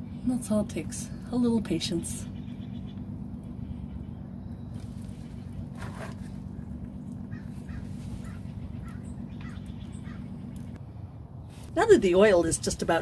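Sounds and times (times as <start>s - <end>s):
steady low hum: 0.0s - 13.0s
crow calling: 6.5s - 10.8s.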